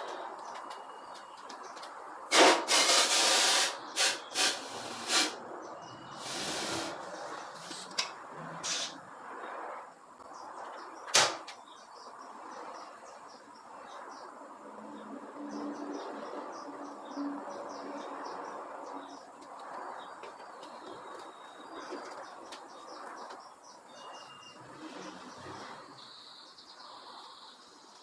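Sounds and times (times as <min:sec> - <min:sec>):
hissing air bursts: 0:02.3 - 0:09.1.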